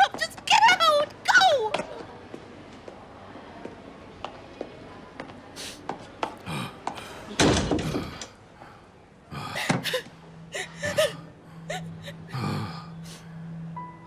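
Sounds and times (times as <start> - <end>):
short gasping breaths: 6.4 - 13.3.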